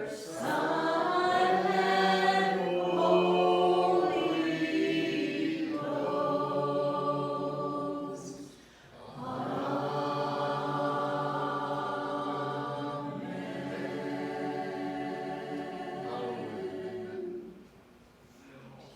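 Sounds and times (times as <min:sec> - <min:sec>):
choir singing a slow hymn: 0:00.0 - 0:17.9.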